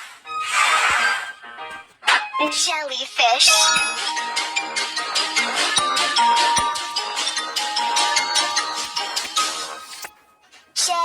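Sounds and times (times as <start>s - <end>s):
upbeat music with bell-like notes: 3.4s - 10.1s.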